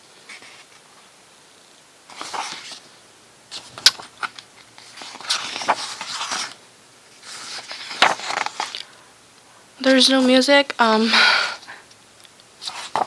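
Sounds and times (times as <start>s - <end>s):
paper pages rustling: 2.1s - 2.9s, 3.5s - 9.0s, 12.6s - 13.0s
page tapping: 7.8s - 8.8s.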